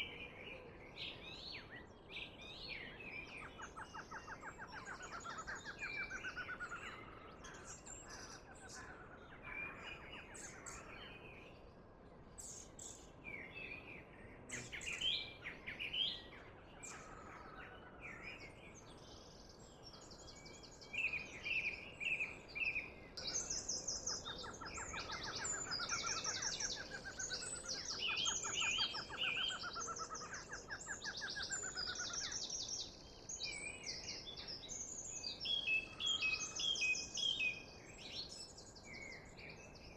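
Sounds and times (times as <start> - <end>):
birds singing and chirping: 12.4 - 39.9.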